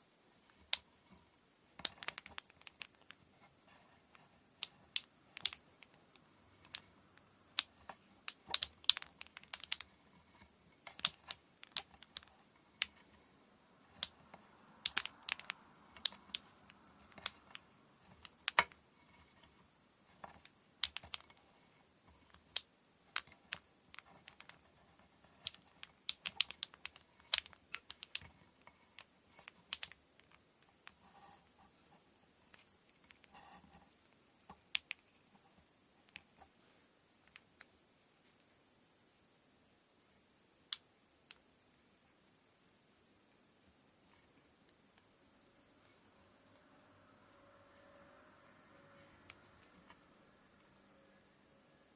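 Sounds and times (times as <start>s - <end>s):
small hard objects clicking: 1.8s - 3.2s, 4.1s - 13.2s, 13.9s - 19.5s, 20.1s - 21.4s, 22.2s - 31.4s, 34.5s - 35.2s.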